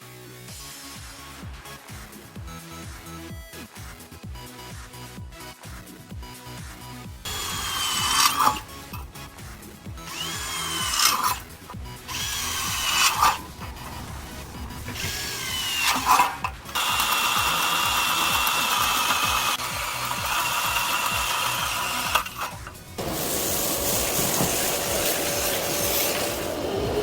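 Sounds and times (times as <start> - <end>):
power drill running: 7.3 - 27.0.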